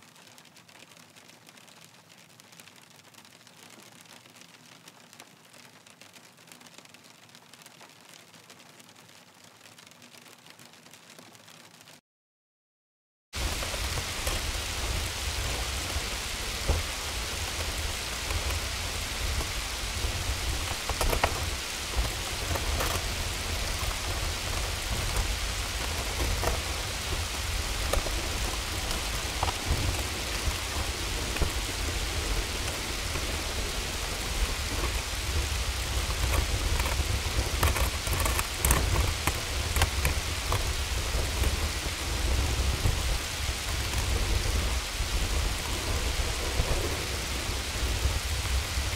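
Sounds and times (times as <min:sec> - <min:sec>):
rain and hail pelting: 0:00.0 - 0:12.0, 0:13.4 - 0:48.9
sharp hail hits: 0:13.4 - 0:48.9.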